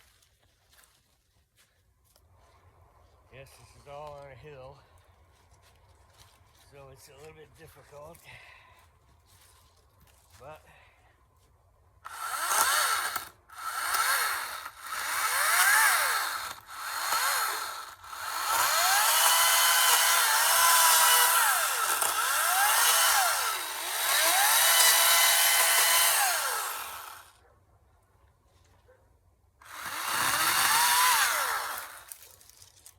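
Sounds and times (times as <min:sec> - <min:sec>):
battery chainsaw whining: 0:12.1 - 0:27.3, 0:29.6 - 0:32.4.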